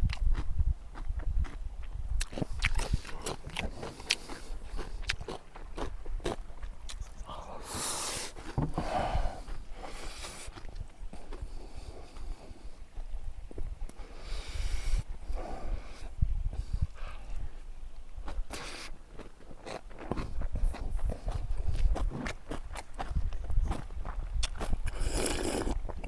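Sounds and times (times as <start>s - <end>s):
crunching and chewing: 0.0s - 7.5s, 8.3s - 12.4s, 18.2s - 26.0s.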